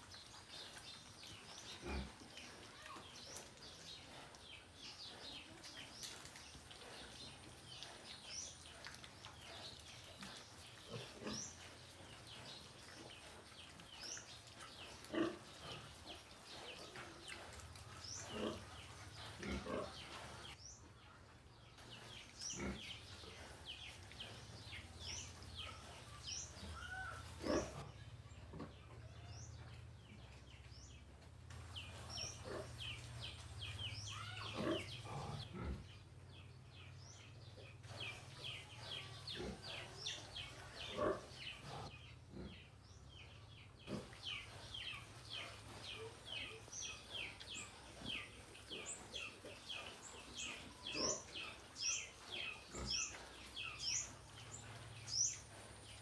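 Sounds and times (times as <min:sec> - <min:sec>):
small birds chirping: 0:00.0 - 0:56.0
piglets grunting: 0:01.5 - 0:05.5, 0:09.3 - 0:12.5, 0:14.8 - 0:20.6, 0:22.5 - 0:23.8, 0:24.4 - 0:27.9, 0:32.0 - 0:36.0, 0:37.9 - 0:42.7, 0:43.8 - 0:56.0.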